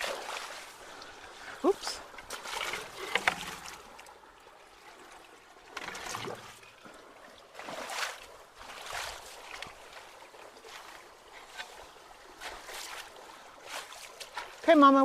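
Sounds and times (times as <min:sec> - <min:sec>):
water splashing: 0:00.0 - 0:15.0
water trickling: 0:00.0 - 0:15.0.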